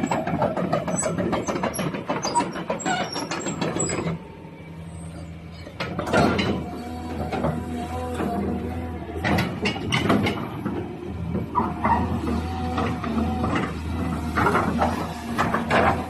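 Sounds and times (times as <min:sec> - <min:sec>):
excavator diesel engine hum: 0:00.0 - 0:16.0
squeaks: 0:00.9 - 0:04.1.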